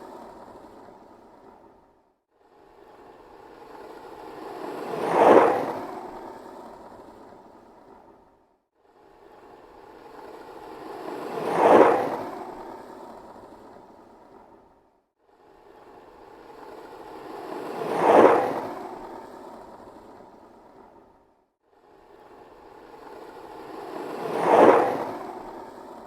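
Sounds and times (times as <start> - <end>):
skateboard wheels rumbling past: 3.7 - 8.1, 10.1 - 14.6, 16.5 - 21.0, 22.9 - 26.0.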